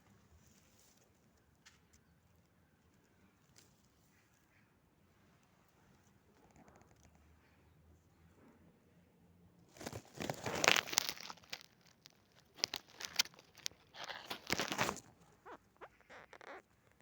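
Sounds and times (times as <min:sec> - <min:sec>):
crinkling scraping creak: 0:06.0 - 0:07.6, 0:09.7 - 0:17.0.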